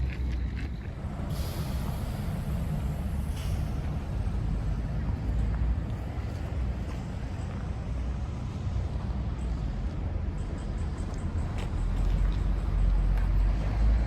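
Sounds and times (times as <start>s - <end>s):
heavy vehicle rumbling by: 0.0s - 8.8s
air brake hiss: 1.3s - 4.0s.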